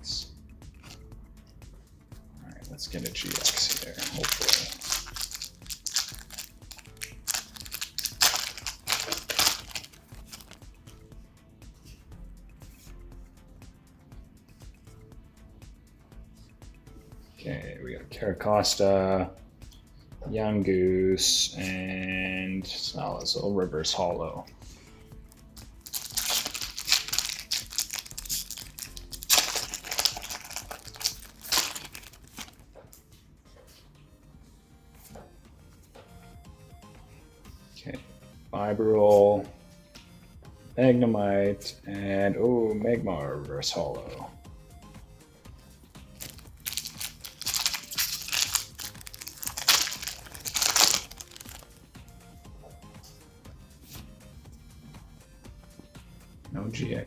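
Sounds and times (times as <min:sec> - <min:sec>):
foil wrapper crinkling: 0:02.7 - 0:10.6, 0:25.8 - 0:32.6, 0:46.2 - 0:51.8.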